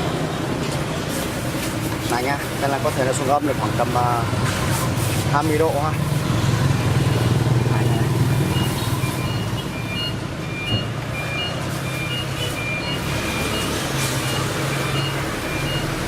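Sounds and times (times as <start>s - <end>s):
short high-pitched beeps: 6.8s - 16.0s.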